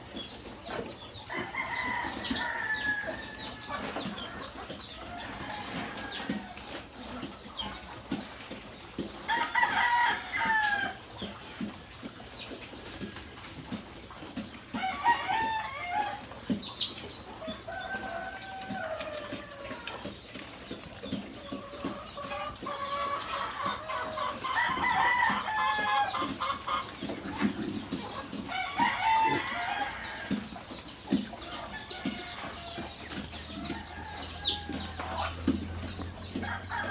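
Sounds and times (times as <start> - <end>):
roosters crowing: 1.0 - 7.8, 9.2 - 11.2, 14.6 - 20.3, 21.3 - 36.9.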